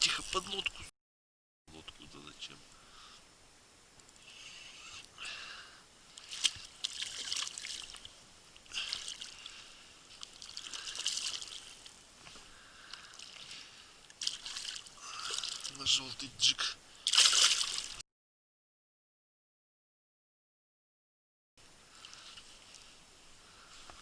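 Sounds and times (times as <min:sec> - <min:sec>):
water splashing and trickling: 0:06.1 - 0:12.1, 0:12.7 - 0:18.0.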